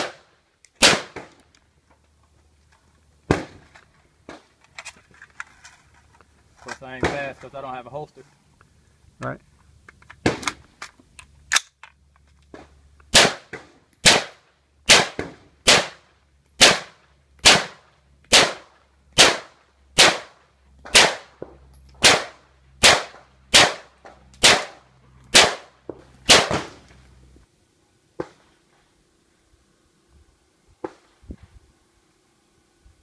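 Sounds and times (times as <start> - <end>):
gunshots: 0.0 - 1.3, 13.1 - 16.0, 16.6 - 21.4, 22.0 - 25.7, 26.3 - 26.8.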